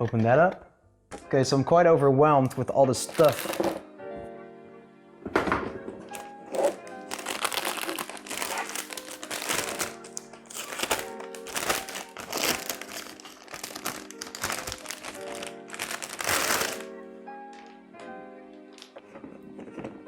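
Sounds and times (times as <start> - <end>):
background music: 0.0 - 20.0
plastic packaging crinkling: 3.0 - 3.8, 6.1 - 16.9.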